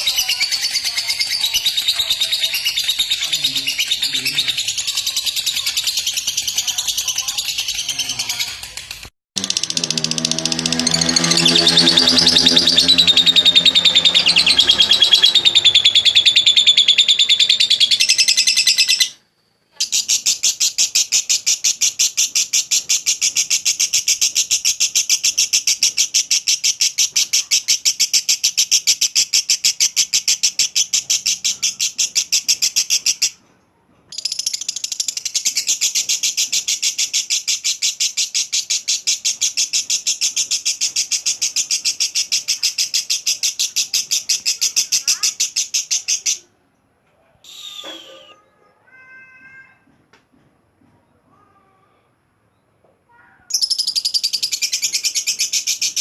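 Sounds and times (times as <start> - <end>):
lovebird chattering call: 9.4 - 19.1.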